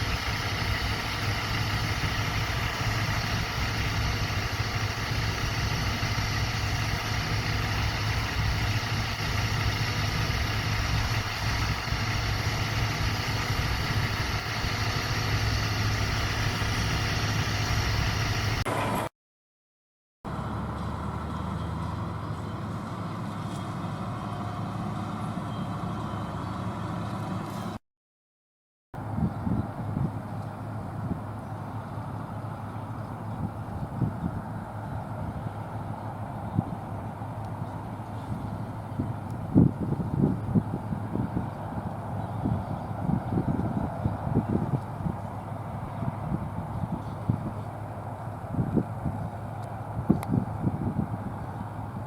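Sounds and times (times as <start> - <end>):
quieter steady machine sound: 0.0 - 18.6
diesel farm machinery droning: 0.0 - 19.1, 20.3 - 27.8, 29.0 - 52.0.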